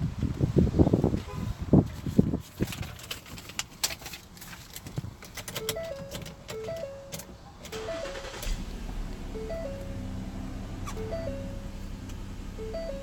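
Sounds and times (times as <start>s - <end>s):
handling clicks and knocks: 2.6s - 7.8s
car warning chime: 5.6s - 13.0s
low rumble: 7.8s - 13.0s.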